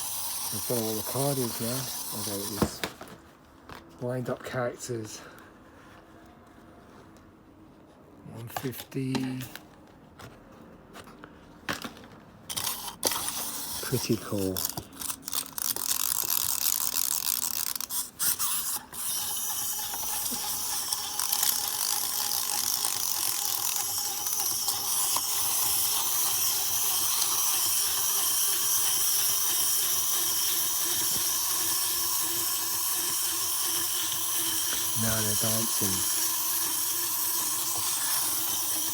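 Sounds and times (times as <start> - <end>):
wind-up toy motors whirring: 0.0 - 3.0, 12.5 - 38.9.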